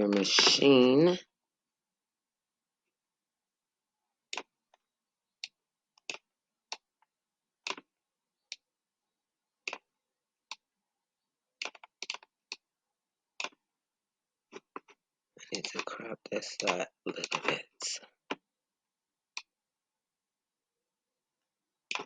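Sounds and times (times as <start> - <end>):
computer mouse clicks: 7.7 - 7.9, 9.7 - 9.9, 11.6 - 12.6, 14.5 - 15.9, 16.6 - 17.6.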